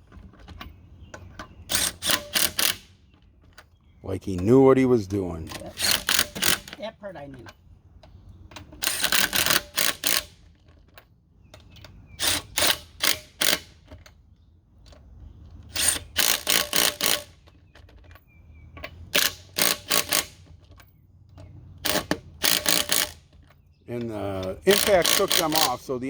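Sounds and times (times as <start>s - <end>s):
impact wrench driving lug nuts: 1.2s - 2.9s, 5.5s - 6.8s, 8.5s - 10.9s, 11.6s - 14.1s, 15.6s - 20.8s, 21.4s - 26.0s.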